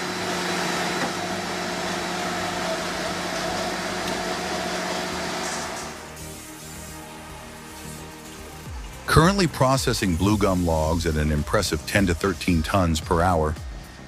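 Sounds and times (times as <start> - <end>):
machine motor hum: 0.0 - 9.0
background music: 5.4 - 14.0.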